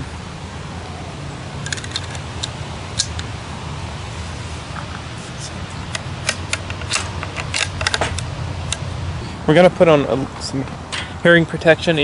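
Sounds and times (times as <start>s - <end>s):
handling clicks and rattles: 1.6s - 3.3s, 5.8s - 8.9s.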